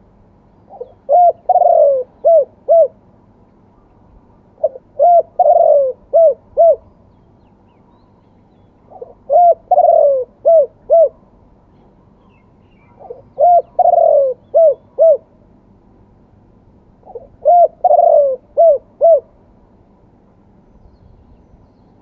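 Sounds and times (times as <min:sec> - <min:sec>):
dove cooing: 0:00.7 - 0:03.0, 0:04.6 - 0:06.9, 0:08.9 - 0:11.3, 0:12.9 - 0:15.4, 0:17.0 - 0:19.4.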